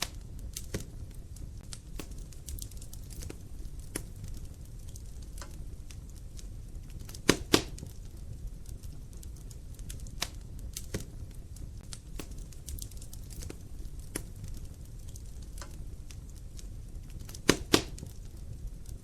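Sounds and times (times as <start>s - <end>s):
fire crackling: 0.0s - 19.0s
fire low rumble: 0.0s - 19.0s
loud wood pops: 7.1s - 8.0s, 17.2s - 18.2s.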